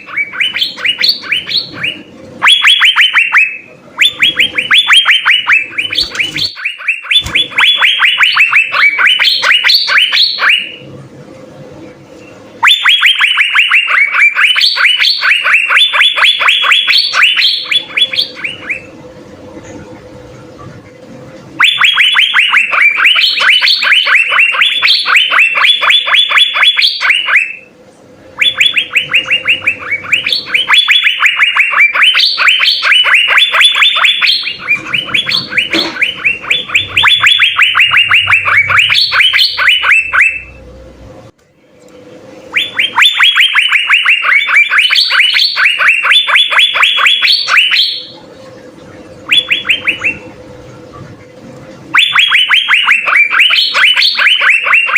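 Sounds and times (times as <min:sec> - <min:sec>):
bird singing rapid sharp notes: 0:00.0 - 0:10.8, 0:12.6 - 0:18.9, 0:28.4 - 0:40.6.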